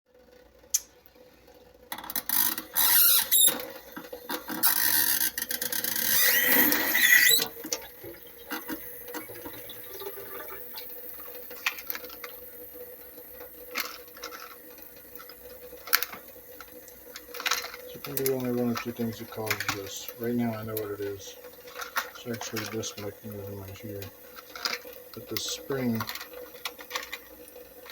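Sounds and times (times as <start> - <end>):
water rushing from faucet: 2.3 - 27.9
squealing valve whine: 2.4 - 3.7, 4.6 - 10.8.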